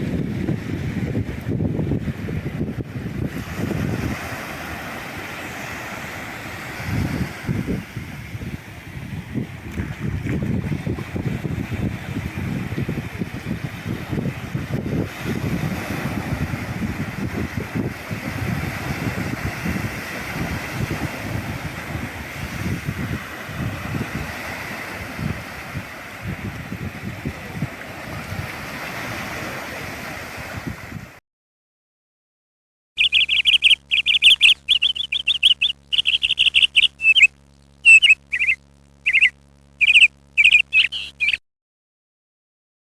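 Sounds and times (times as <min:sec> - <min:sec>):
sea surf: 0:00.0 - 0:31.2
wind at shore: 0:00.0 - 0:31.2, 0:33.0 - 0:41.4
bird high chirps: 0:33.0 - 0:41.4.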